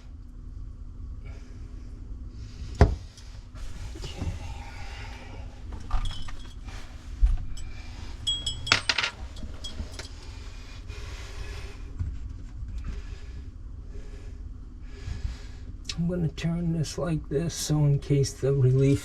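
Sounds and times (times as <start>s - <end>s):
metal tools clinking and knocking: 5.7s - 10.2s.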